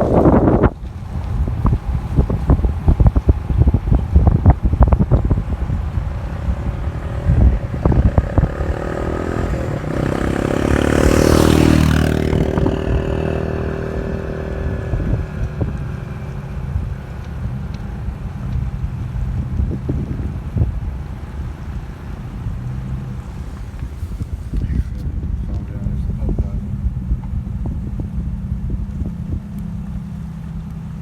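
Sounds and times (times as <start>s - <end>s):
vehicle passing by: 0.0s - 24.6s
wind buffeting microphone: 0.0s - 31.0s.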